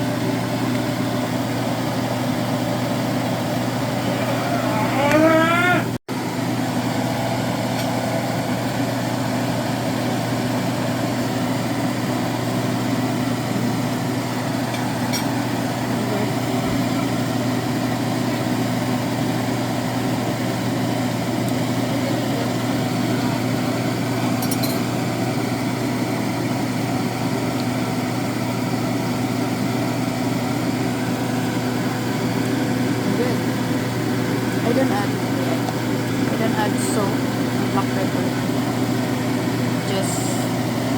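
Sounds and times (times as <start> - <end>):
low mechanical hum: 0.0 - 40.9.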